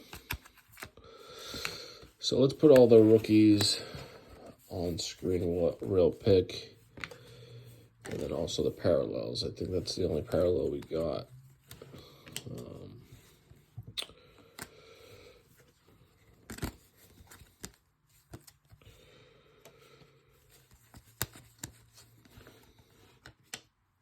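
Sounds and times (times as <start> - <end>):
cards rustling: 0.0 - 19.1, 19.7 - 23.8.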